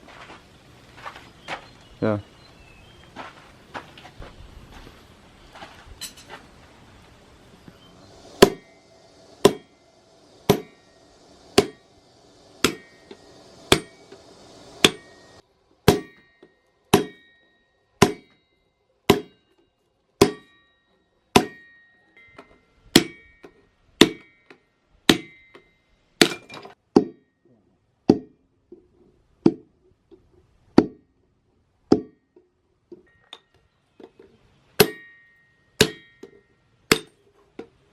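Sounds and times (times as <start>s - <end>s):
hammer striking steel on anvil: 8.4s - 9.8s, 10.4s - 11.9s, 12.6s - 19.6s, 20.2s - 27.4s, 31.9s - 32.4s, 34.8s - 37.7s.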